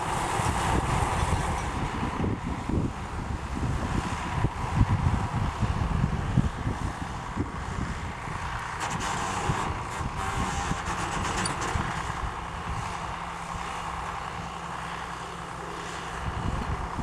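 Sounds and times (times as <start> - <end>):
baler machinery rattling: 0.0 - 2.4, 8.7 - 15.2
tractor diesel engine running: 0.0 - 17.0.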